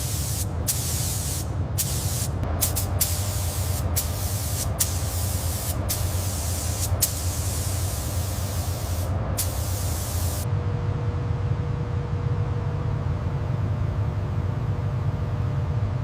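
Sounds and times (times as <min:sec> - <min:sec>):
compressed air spraying hiss: 0:00.0 - 0:10.5
constant low hum: 0:00.0 - 0:16.0.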